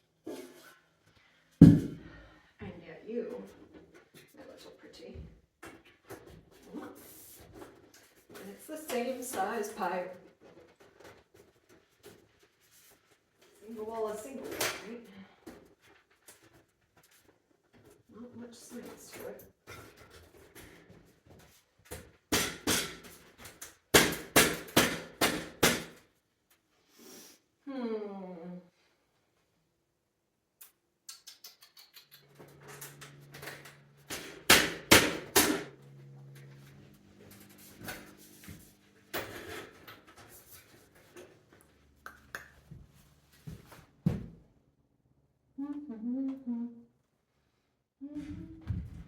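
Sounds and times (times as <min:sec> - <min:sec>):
heavy thud: 0:01.6 - 0:02.1
person humming: 0:27.7 - 0:28.7, 0:45.6 - 0:47.0, 0:48.0 - 0:48.9.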